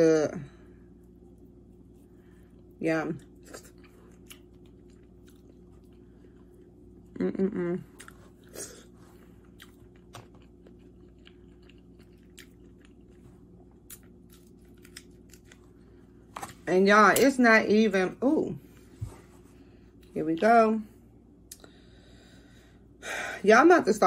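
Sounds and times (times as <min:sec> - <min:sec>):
chewing crab legs: 0:03.2 - 0:07.1, 0:07.8 - 0:16.1
person humming: 0:07.2 - 0:08.0.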